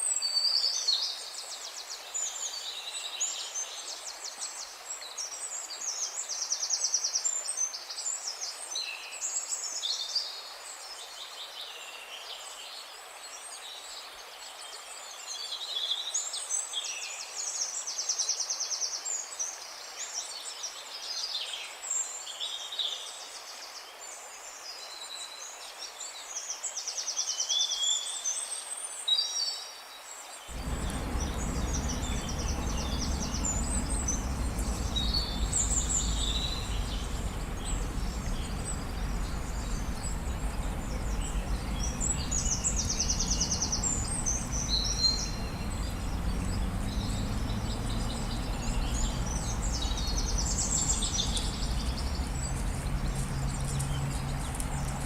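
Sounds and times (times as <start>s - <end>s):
low rumbling noise: 30.5s - 55.0s
songbirds chirping and trilling: 30.5s - 55.0s.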